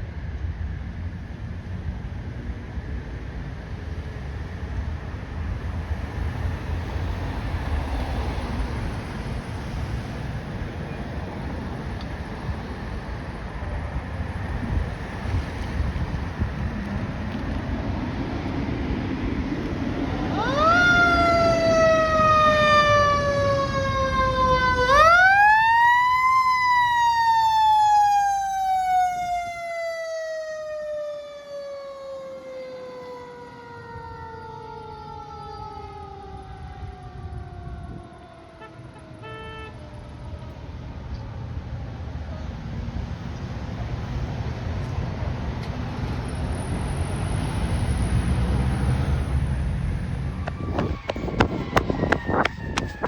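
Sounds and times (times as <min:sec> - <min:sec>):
mechanical fire siren wailing: 0:20.2 - 0:40.6, 0:50.0 - 0:53.0.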